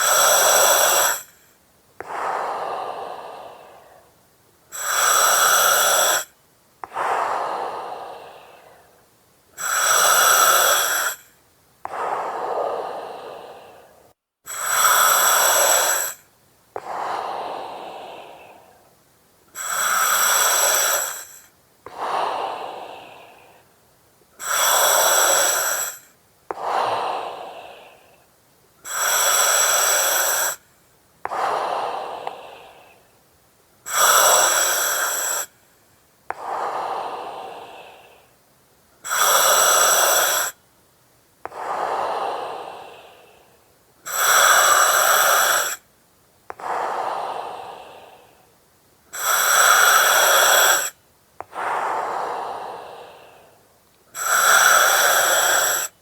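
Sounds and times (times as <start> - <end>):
breathing through an oxygen mask: 0.0 - 18.9, 19.5 - 23.8, 24.4 - 33.1, 33.8 - 38.4, 39.0 - 40.6, 41.4 - 45.9, 46.5 - 48.5, 49.1 - 56.0.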